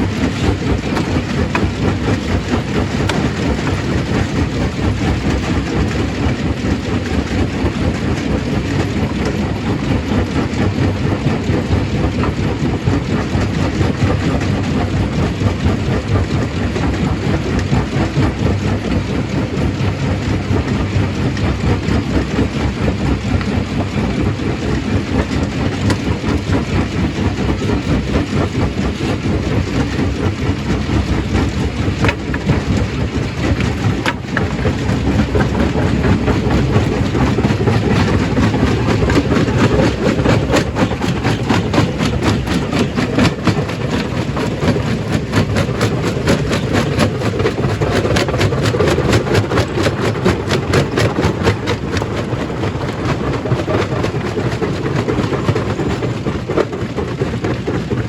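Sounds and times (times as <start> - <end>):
stone crushing machine clattering: 0.0 - 10.9, 25.4 - 58.0.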